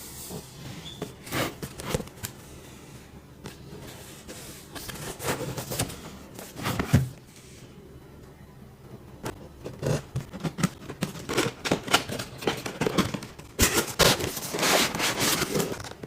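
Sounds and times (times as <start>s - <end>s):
packaging rustling and crinkling: 9.8s - 16.0s.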